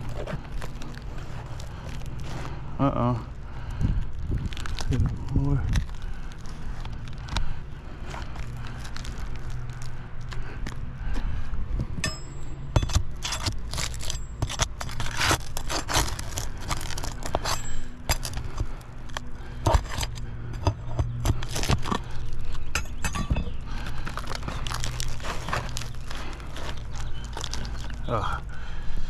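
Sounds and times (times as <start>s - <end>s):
steady low hum: 0.0s - 29.0s
metal tool scraping shingles: 12.0s - 18.8s, 19.6s - 23.6s.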